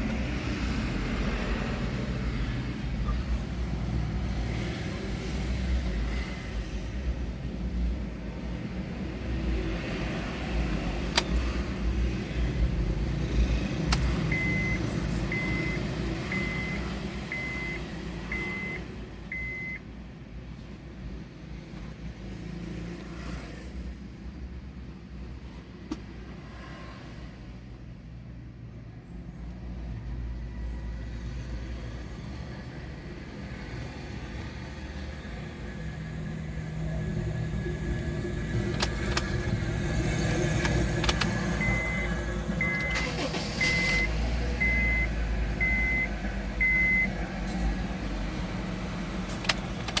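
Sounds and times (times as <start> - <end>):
sharp clicks: 38.7 - 39.5, 40.6 - 41.4, 49.3 - 50.0.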